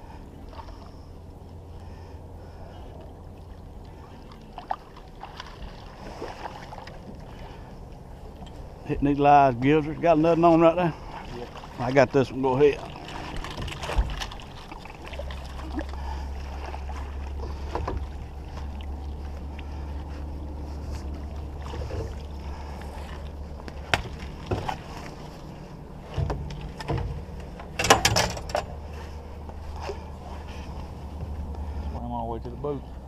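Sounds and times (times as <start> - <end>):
boat motor humming: 0.0 - 33.0
knocks and clicks on boat: 13.0 - 14.8, 17.3 - 18.9, 23.6 - 25.2, 26.0 - 28.9.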